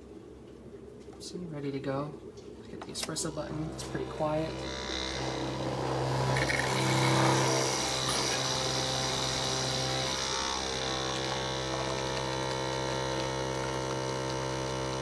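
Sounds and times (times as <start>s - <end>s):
espresso machine pump humming: 3.0s - 15.0s.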